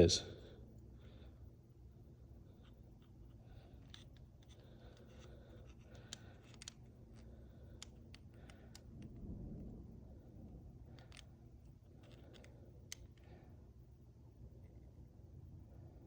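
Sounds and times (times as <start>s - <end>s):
low steady hum: 0.0s - 16.0s
measuring tool clicking and scraping: 2.6s - 9.1s.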